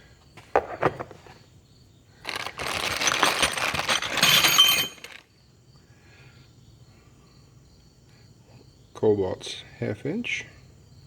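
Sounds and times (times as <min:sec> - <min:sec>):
packaging rustling: 0:02.2 - 0:05.2
metal tools clinking: 0:02.2 - 0:05.3.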